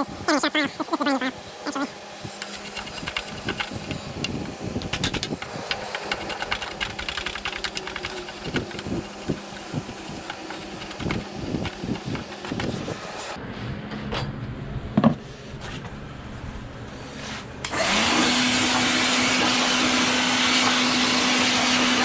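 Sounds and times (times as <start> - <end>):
power saw motor hum: 2.2 - 13.4
saw blade clicking on wood: 2.4 - 13.4.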